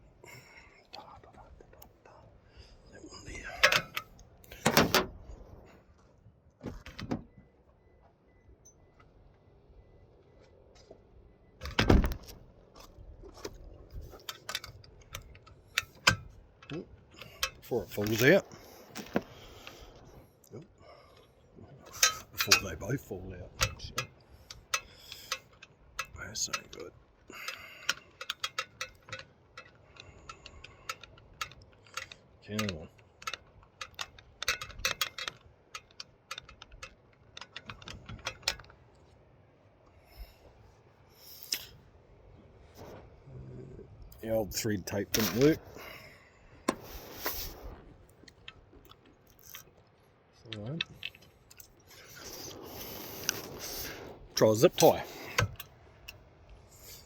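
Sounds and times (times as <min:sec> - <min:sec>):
metal hardware clinking: 0:03.5 - 0:05.2, 0:14.0 - 0:19.9, 0:21.9 - 0:38.7, 0:44.9 - 0:45.9, 0:50.8 - 0:57.0.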